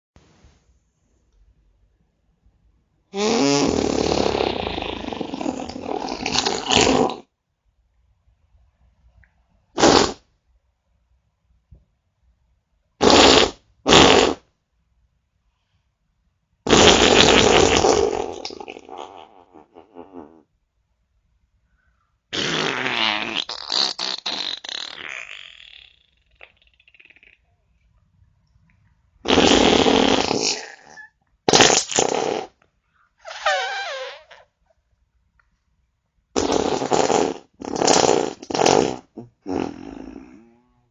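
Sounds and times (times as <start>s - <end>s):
farting: 3.2s - 7.3s, 9.7s - 10.3s, 13.0s - 14.5s, 16.7s - 20.5s, 22.3s - 27.5s, 29.2s - 32.6s, 33.2s - 34.6s, 36.4s - 40.9s.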